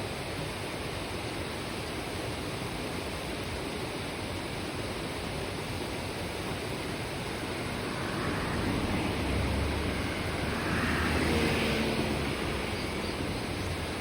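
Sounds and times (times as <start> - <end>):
stream flowing: 0.3 - 14.0
low rumble: 7.0 - 13.8.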